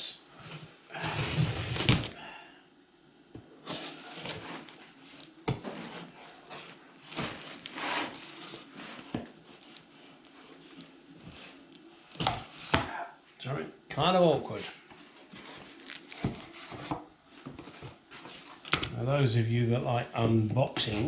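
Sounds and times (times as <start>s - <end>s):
packaging rustling and crinkling: 3.8s - 12.6s, 14.9s - 18.9s.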